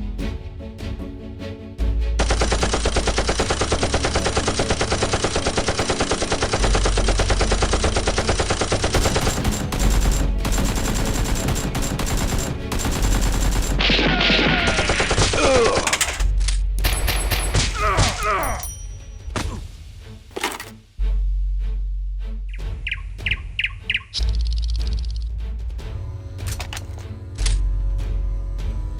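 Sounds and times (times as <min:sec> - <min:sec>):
rapid automatic gunfire: 0:02.2 - 0:16.2.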